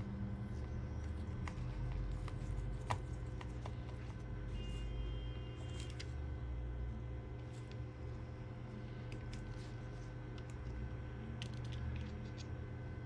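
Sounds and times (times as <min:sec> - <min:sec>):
steady low hum: 0:00.0 - 0:13.0
small tools clicking and tapping: 0:00.5 - 0:01.6.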